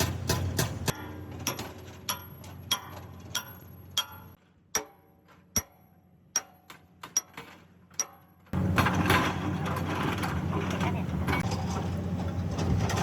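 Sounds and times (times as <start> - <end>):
sharp ringing metal taps: 0.9 - 8.4.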